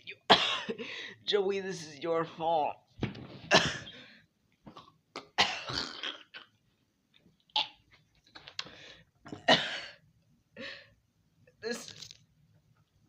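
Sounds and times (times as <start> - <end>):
person coughing harshly: 0.3 - 0.9, 3.5 - 4.0, 5.4 - 6.3, 9.3 - 10.0.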